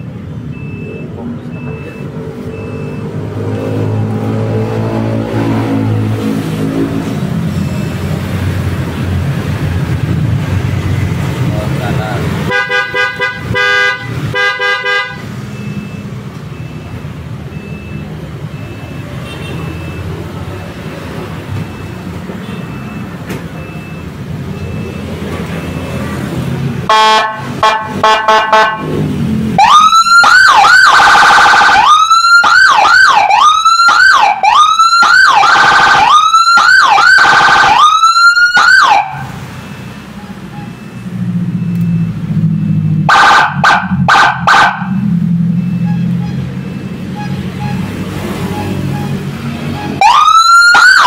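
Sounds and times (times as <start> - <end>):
electronic siren wailing: 2.0 - 8.9, 26.9 - 28.8, 29.5 - 51.0.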